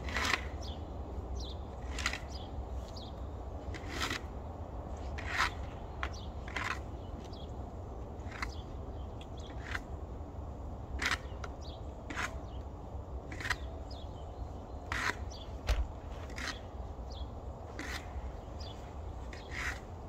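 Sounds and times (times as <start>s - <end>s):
footsteps crunching in snow: 18.0s - 19.9s.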